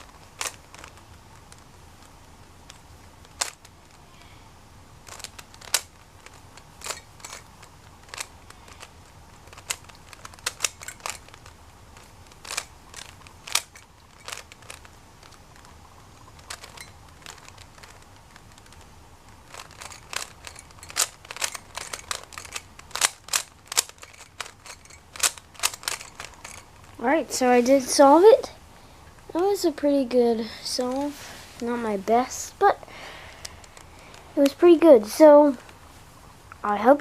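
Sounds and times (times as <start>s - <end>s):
puzzle cube layers clicking: 0.0s - 4.0s, 5.1s - 26.8s.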